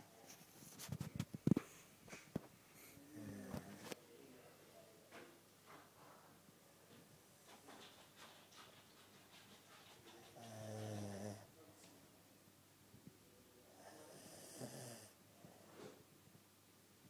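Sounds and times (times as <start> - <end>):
snoring: 3.1 - 3.8, 10.4 - 11.5, 13.7 - 15.2.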